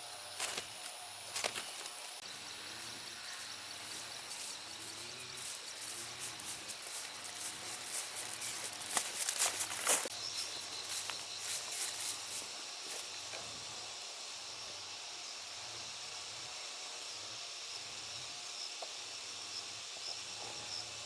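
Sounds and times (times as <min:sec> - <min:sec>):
high insect tones: 0:00.0 - 0:21.0
rustling crackles: 0:00.4 - 0:13.1.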